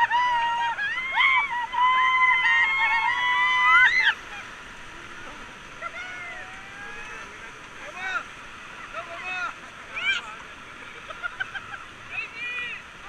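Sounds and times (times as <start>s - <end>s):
people shrieking: 0.0s - 4.5s
river water rushing: 0.0s - 13.0s.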